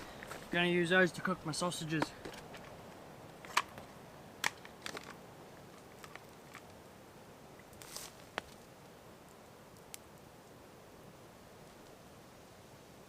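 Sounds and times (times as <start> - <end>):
short rustle: 7.8 - 8.4.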